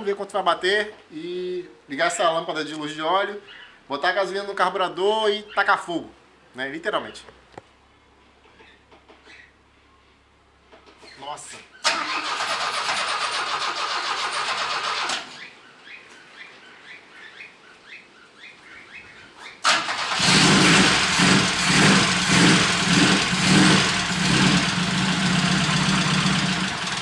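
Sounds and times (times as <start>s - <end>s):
starter motor cranking: 11.9s - 15.3s, 19.6s - 27.0s.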